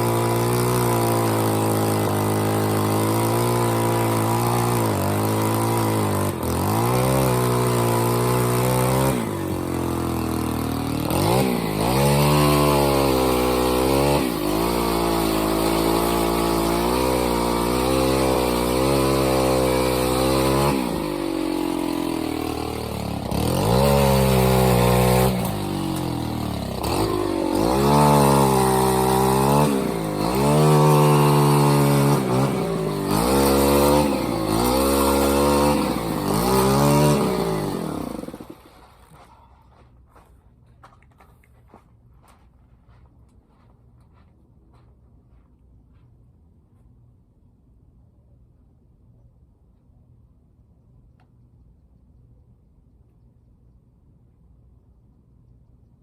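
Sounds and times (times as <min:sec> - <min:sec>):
saw engine revving: 0:00.0 - 0:38.9.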